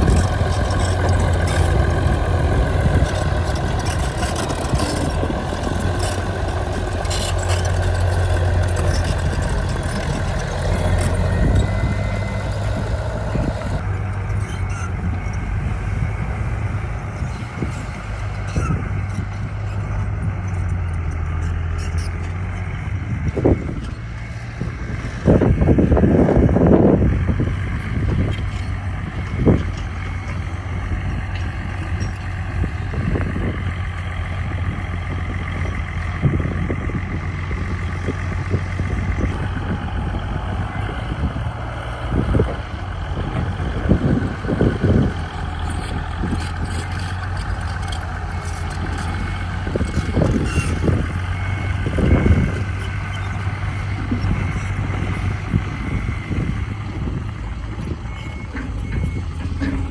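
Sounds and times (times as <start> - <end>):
diesel machinery running under load: 0.0 - 59.9
clunks and knocks: 57.7 - 59.9.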